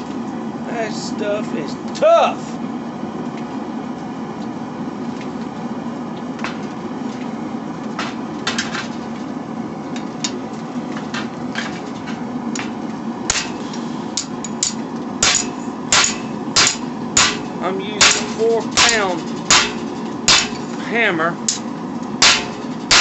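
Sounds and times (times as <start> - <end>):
hammer striking hot steel: 11.2 - 20.8, 21.4 - 23.0.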